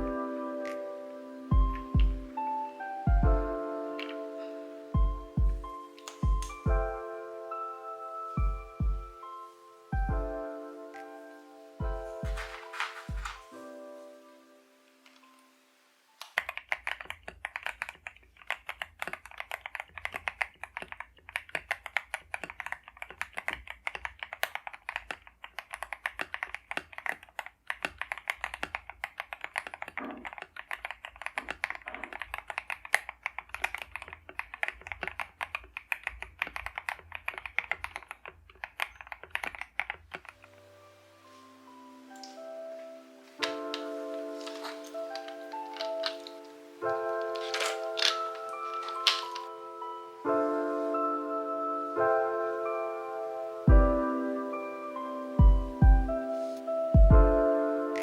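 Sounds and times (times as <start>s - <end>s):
mechanical keyboard typing: 5.0s - 6.8s, 11.8s - 13.5s, 16.2s - 40.5s, 43.4s - 50.1s.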